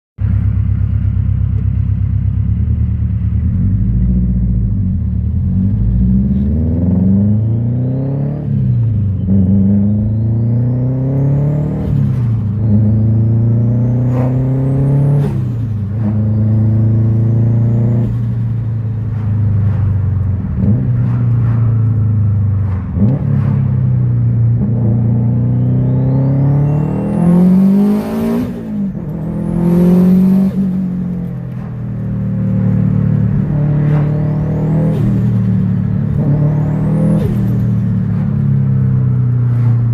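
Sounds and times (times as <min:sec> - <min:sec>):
turbocharged engine accelerating: 0:00.3 - 0:39.9
turbo whistle: 0:25.4 - 0:27.6.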